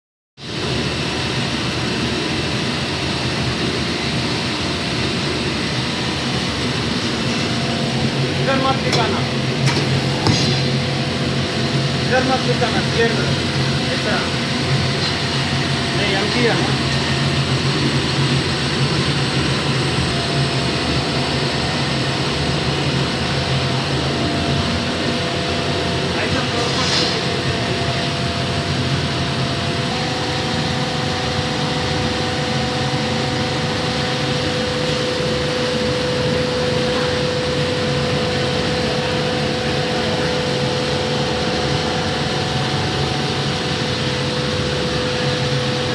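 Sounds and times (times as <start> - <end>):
machinery running: 1.8 - 45.9.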